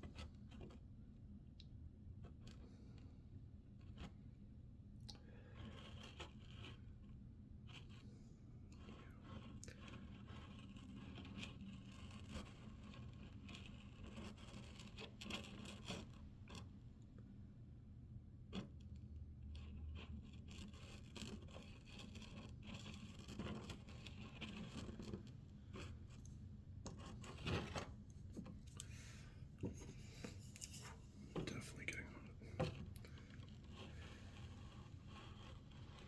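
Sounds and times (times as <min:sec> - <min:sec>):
tool scraping plastic: 0:19.6 - 0:36.0
low steady hum: 0:20.2 - 0:36.0.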